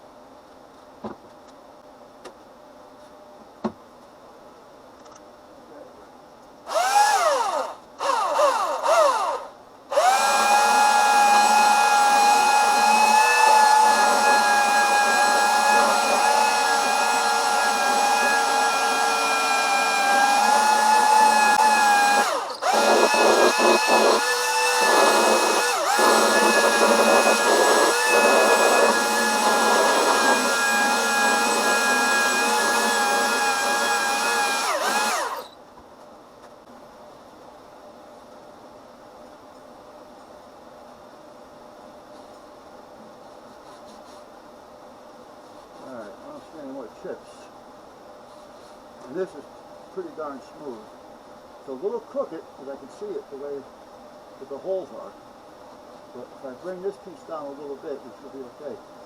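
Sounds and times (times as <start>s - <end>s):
electric sander motor whine: 10.0s - 35.6s.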